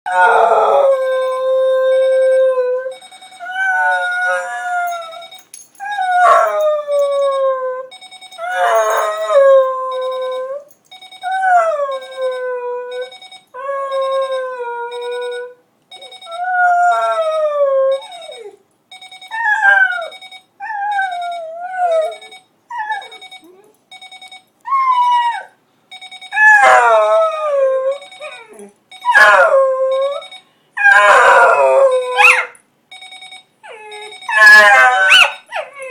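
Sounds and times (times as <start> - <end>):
dog howling: 0.1 - 5.3, 26.4 - 30.2, 30.8 - 32.5, 33.7 - 35.9
alarm clock beeping: 0.7 - 22.4, 23.1 - 24.5, 25.9 - 26.4, 27.9 - 35.5.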